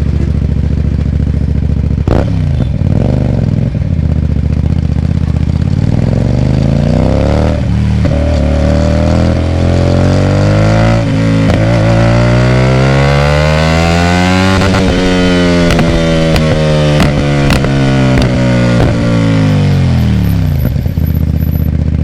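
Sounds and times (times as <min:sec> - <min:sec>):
motorcycle engine accelerating: 0:00.0 - 0:22.0
exhaust cracks: 0:14.5 - 0:19.5.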